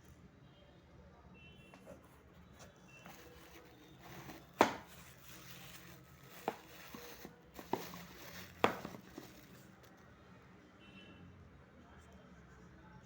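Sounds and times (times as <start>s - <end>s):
hands handling packaging: 3.0s - 9.8s.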